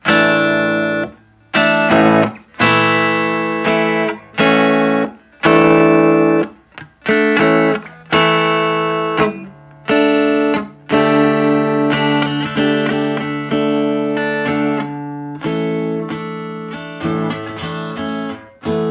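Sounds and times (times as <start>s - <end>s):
electric guitar strummed chords: 0.0s - 18.9s.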